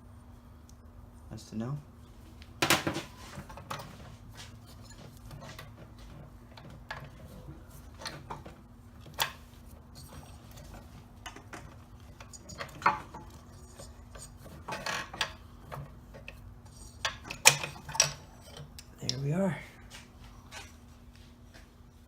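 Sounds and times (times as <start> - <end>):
metal engine parts clinking: 2.6 - 5.8, 9.0 - 19.2.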